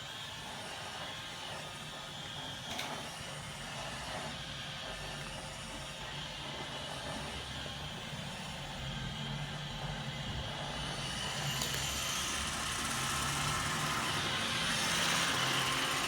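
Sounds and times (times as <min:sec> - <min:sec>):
robot vacuum whirring: 0:10.1 - 0:16.0.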